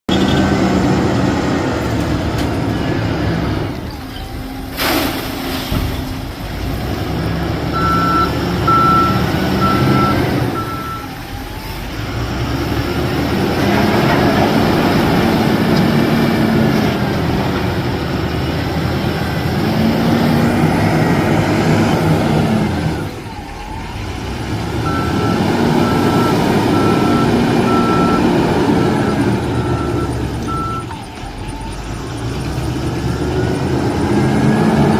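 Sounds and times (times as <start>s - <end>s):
diesel engine revving under load: 0.0s - 34.9s
reversing alarm beeping: 7.7s - 11.8s, 23.0s - 32.4s.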